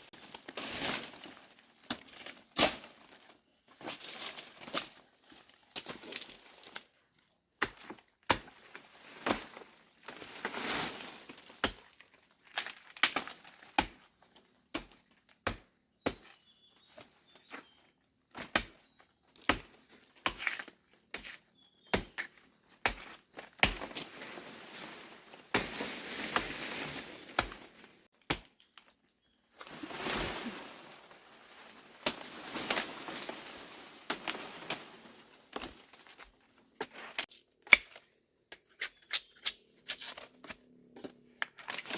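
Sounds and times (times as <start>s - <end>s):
rustling: 29.5s - 36.3s.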